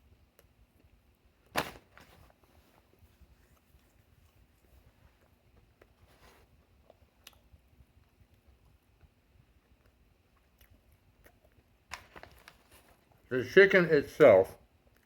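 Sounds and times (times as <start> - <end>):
quiet chewing: 2.8 - 11.9.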